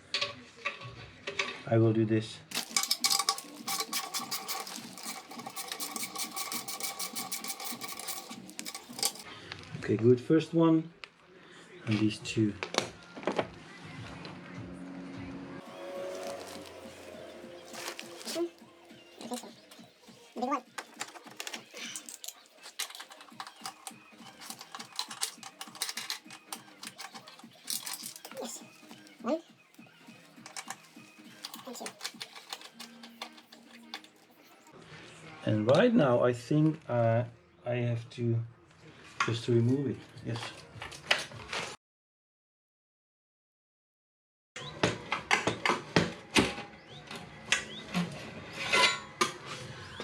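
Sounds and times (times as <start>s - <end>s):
tool rapid clicking: 2.5s - 9.2s, 15.8s - 29.2s, 29.8s - 34.5s.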